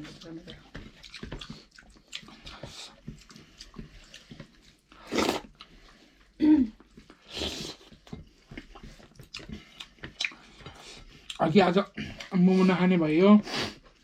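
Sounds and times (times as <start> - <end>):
chewing with wet mouth clicks: 0.0 - 6.1, 7.8 - 11.5.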